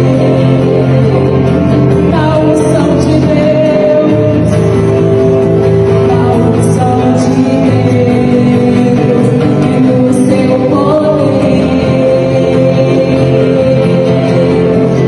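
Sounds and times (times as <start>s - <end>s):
gospel band with singing: 0.0s - 15.0s.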